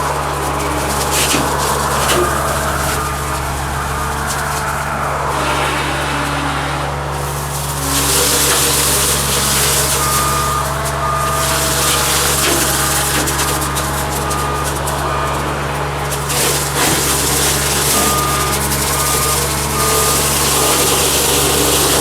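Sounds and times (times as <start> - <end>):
diesel engine running under load: 0.0 - 22.0
reverse alarm beeping: 16.9 - 22.0.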